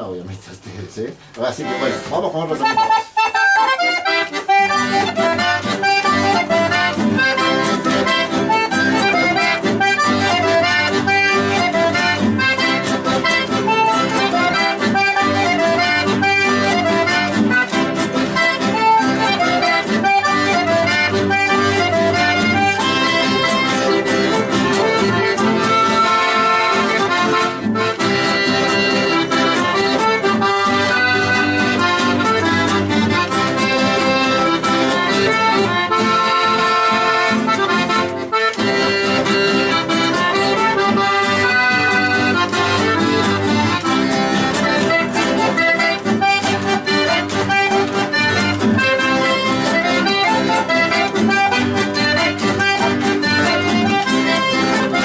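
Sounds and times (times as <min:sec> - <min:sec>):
accordion playing lively melody: 0:00.4 - 0:55.0.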